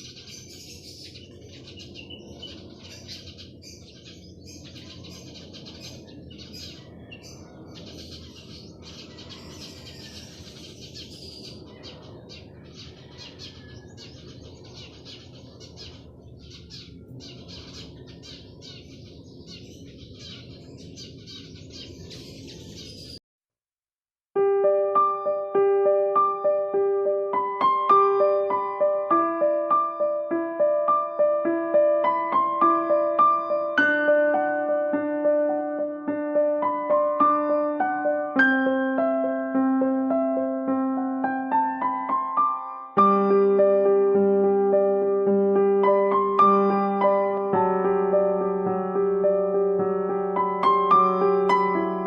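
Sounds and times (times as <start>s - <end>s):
small birds chirping: 0.0s - 23.2s.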